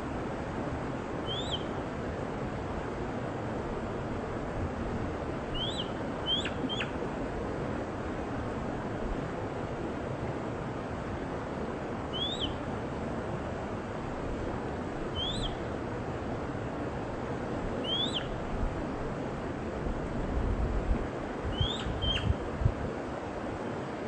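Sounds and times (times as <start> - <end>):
bird chirping: 1.3 - 1.7, 5.5 - 6.9, 12.1 - 12.6, 15.1 - 15.6, 17.8 - 18.3, 21.6 - 22.3.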